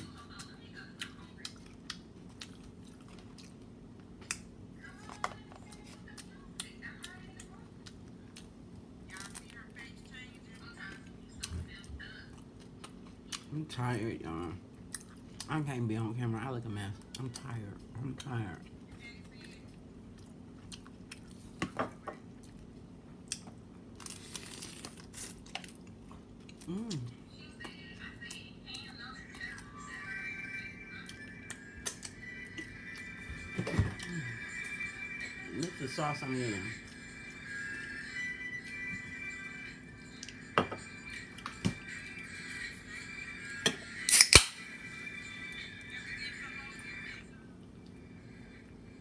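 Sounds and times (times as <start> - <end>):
person chewing food: 0.0 - 4.6, 5.7 - 9.4, 12.4 - 13.6, 14.8 - 15.5, 19.5 - 21.6, 22.2 - 27.7, 30.9 - 34.8
wet chewing: 0.2 - 4.5.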